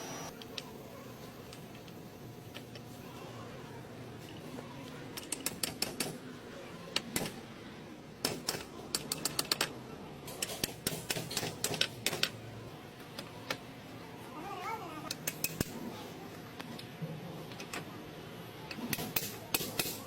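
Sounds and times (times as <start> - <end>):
hand tools clicking on metal: 5.2 - 6.2, 8.2 - 9.7, 10.3 - 12.3, 15.1 - 15.8.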